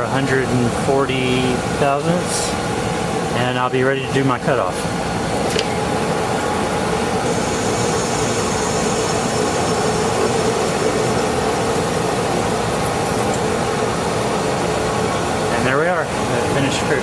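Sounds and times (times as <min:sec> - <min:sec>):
metal lathe humming: 0:06.1 - 0:15.5.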